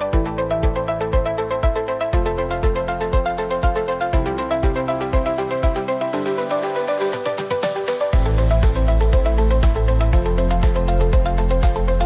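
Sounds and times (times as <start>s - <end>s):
heavy bass beat: 8.2s - 12.0s.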